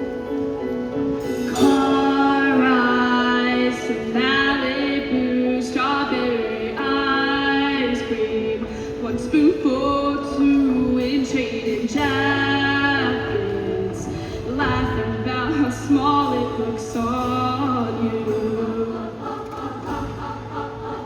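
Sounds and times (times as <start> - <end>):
instrumental accompaniment: 0.0 - 21.0
choir singing: 1.4 - 8.6, 17.2 - 21.0.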